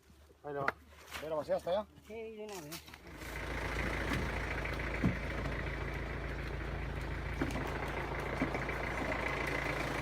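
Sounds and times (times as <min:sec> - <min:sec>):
vehicle engine idling: 0:02.9 - 0:10.0.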